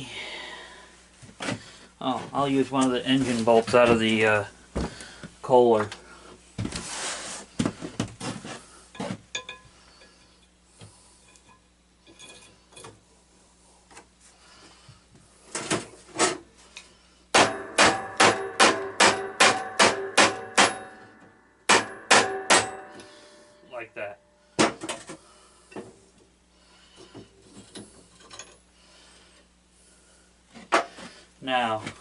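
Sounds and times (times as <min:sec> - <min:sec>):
tools clinking and knocking: 0:09.0 - 0:10.1, 0:11.3 - 0:13.0, 0:27.6 - 0:28.6
hammer striking metal: 0:17.3 - 0:23.7.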